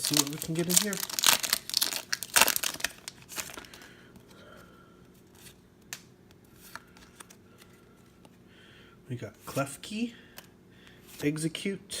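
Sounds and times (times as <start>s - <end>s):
foil pack tearing and crinkling: 0.0s - 3.9s.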